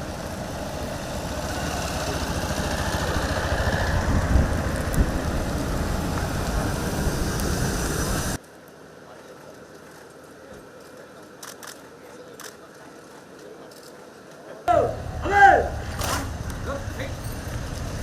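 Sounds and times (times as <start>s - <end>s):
turboprop engines running: 0.0s - 8.4s.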